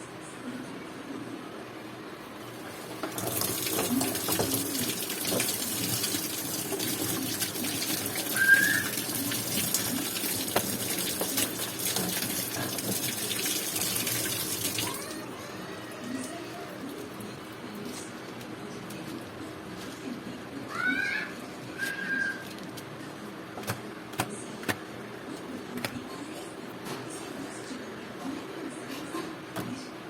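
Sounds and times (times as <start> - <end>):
water running from a tap: 3.0 - 15.3.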